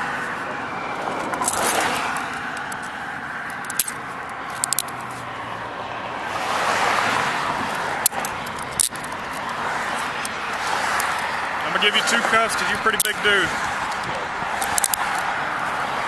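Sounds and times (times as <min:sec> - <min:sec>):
roadside traffic noise: 0:00.0 - 0:16.0
vehicle passing: 0:00.0 - 0:16.0
handcuffs clicking and jingling: 0:01.2 - 0:05.2, 0:07.6 - 0:11.4, 0:13.8 - 0:15.3.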